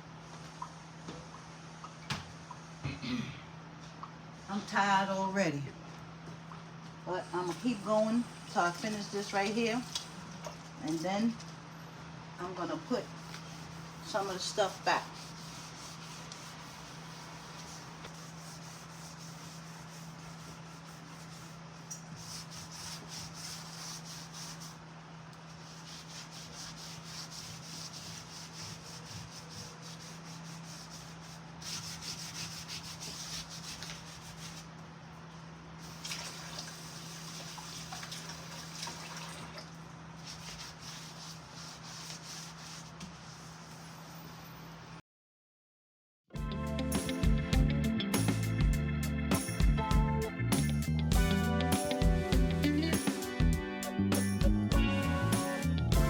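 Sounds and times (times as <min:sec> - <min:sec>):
hand scrubbing a surface: 0:07.4 - 0:10.2, 0:12.9 - 0:24.9, 0:25.5 - 0:34.7, 0:35.8 - 0:39.0, 0:40.2 - 0:44.0
steady low hum: 0:46.4 - 0:56.0.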